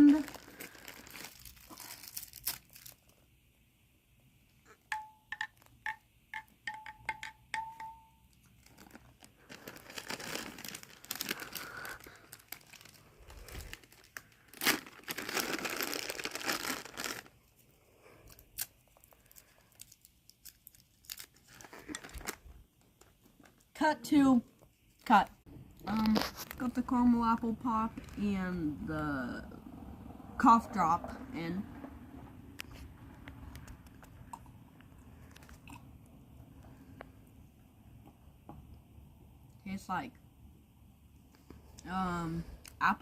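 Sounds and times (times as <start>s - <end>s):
candy wrappers crinkling and tearing: 0.0s - 3.3s, 8.4s - 23.7s, 25.8s - 26.8s, 27.9s - 28.2s, 35.1s - 35.7s.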